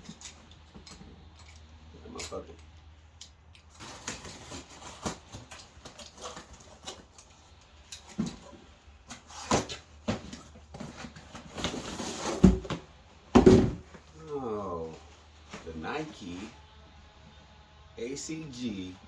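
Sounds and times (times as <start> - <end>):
packaging rustling and scraping: 3.7 - 14.1.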